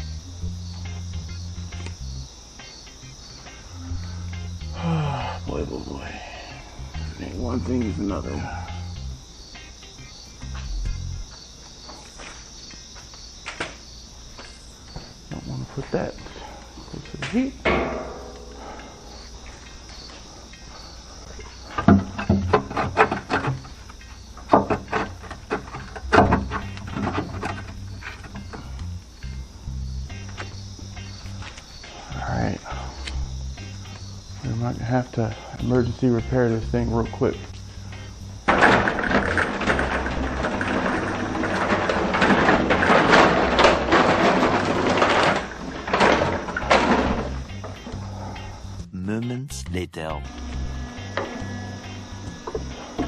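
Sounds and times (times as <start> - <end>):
steady electrical hum: 0.0 - 53.0
metal clanks and knocks: 17.2 - 19.0, 21.7 - 23.8, 24.4 - 28.7, 38.5 - 48.0.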